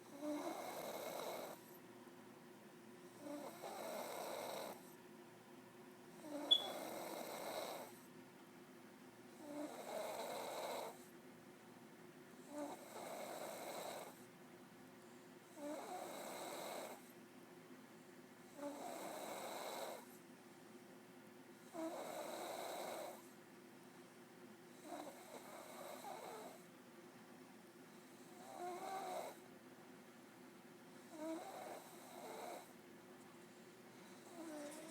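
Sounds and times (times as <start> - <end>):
woman snoring: 0.1 - 1.6, 3.2 - 4.8.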